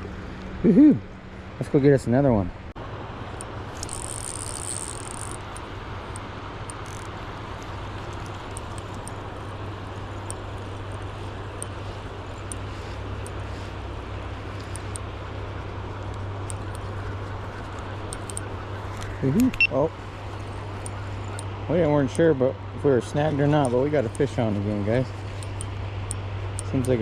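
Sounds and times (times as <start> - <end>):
faint ticks: 3.4 - 15.1, 25.2 - 27.0.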